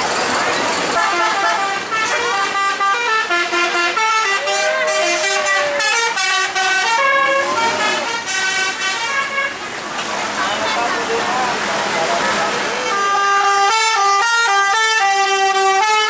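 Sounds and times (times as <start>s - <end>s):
bus horn playing a melody: 0.9s - 9.7s, 12.4s - 16.0s.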